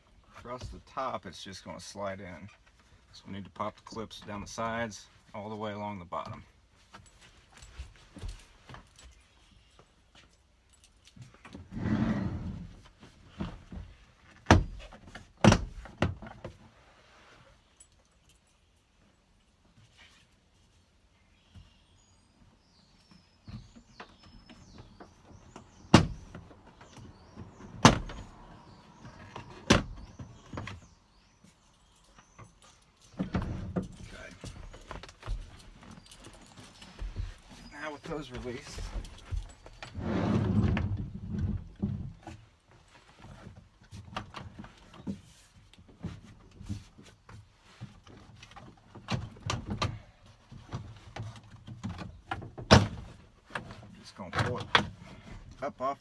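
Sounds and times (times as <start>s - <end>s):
rough scraping: 39.9s - 41.2s.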